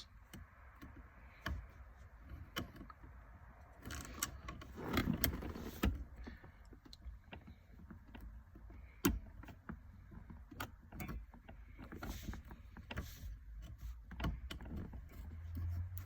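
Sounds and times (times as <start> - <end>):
small clicks and knocks: 0.0 - 16.0.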